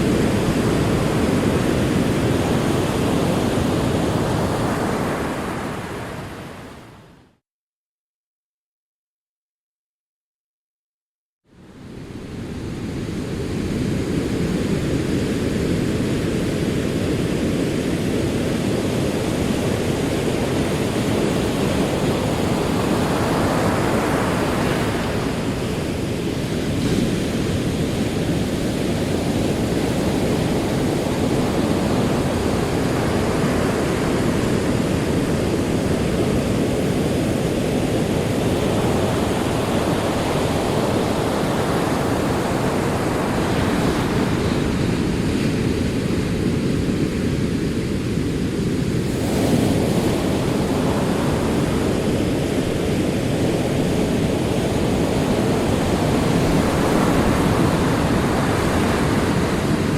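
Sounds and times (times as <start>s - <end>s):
ocean waves washing onto shore: 0.0s - 7.2s, 11.6s - 59.9s.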